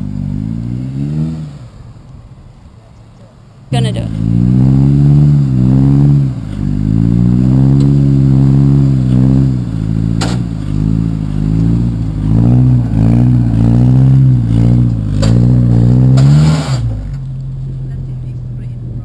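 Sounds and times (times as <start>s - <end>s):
car engine revving: 0.0s - 19.0s
sharp clunk: 10.2s - 10.5s, 16.1s - 17.2s.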